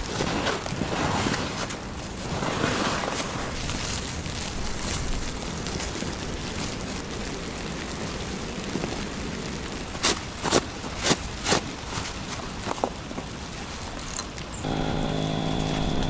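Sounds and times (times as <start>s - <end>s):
footsteps crunching in snow: 0.0s - 6.0s, 9.9s - 14.0s.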